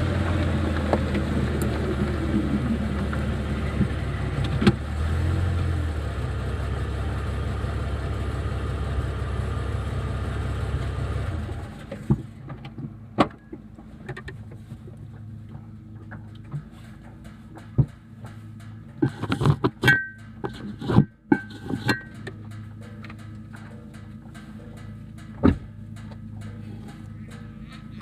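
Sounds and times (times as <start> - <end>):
engine and road rumble in car: 0.0 - 28.0
low hum: 0.0 - 28.0
sharp clicks and knocks: 11.9 - 28.0.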